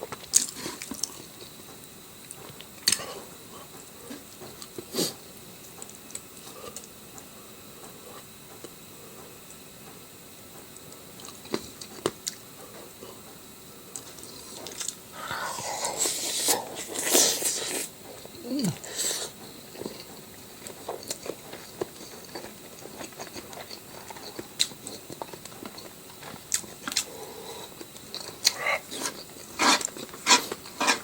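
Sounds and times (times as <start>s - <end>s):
person chewing and crunching: 0.0s - 1.6s, 2.2s - 5.2s, 11.2s - 12.9s, 13.9s - 31.0s.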